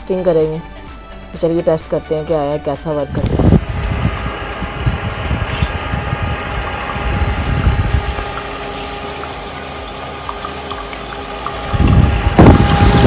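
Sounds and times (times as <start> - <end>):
small water pump humming: 3.1 - 13.0.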